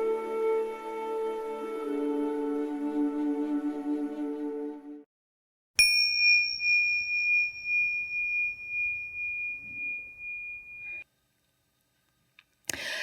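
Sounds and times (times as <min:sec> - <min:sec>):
meditation chime ringing: 0:05.8 - 0:11.0.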